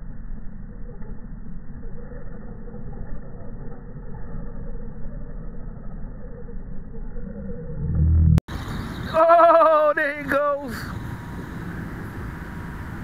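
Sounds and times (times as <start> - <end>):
muffled low rumble: 7.0 - 8.5.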